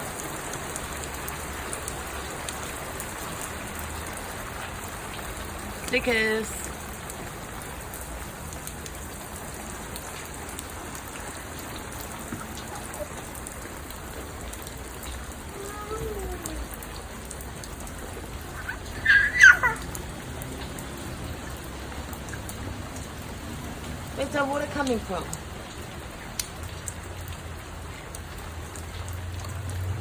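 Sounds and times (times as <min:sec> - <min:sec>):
steady rain falling: 0:00.0 - 0:30.0.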